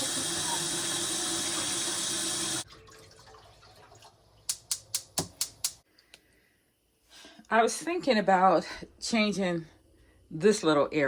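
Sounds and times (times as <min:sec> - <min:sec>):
kitchen tap running: 0:00.0 - 0:05.8.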